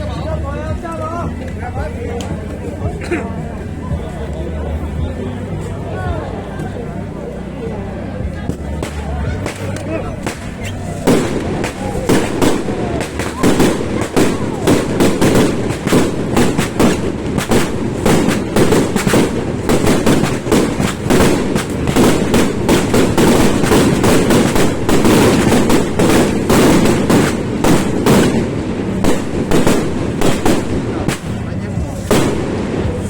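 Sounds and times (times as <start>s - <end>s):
firecrackers crackling: 0.0s - 33.0s
rushing roar of rockets: 8.3s - 33.0s.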